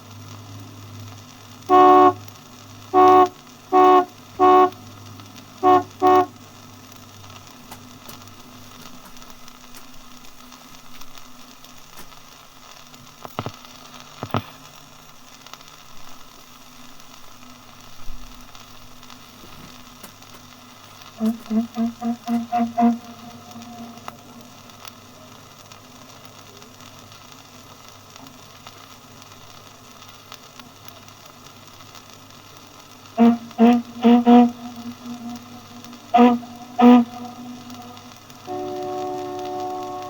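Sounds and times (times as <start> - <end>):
record surface crackle: 0.0 - 40.0
boat horn blasts: 1.6 - 6.5, 21.0 - 24.6, 33.1 - 40.0
boat engine humming: 1.6 - 9.4, 21.0 - 24.8, 33.1 - 40.0
faint brief tones: 21.2 - 24.5.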